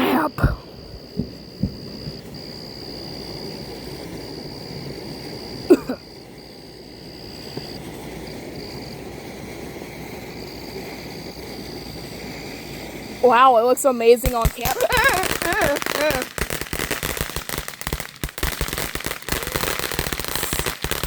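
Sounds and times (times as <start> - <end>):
insects trilling: 0.0 - 21.0.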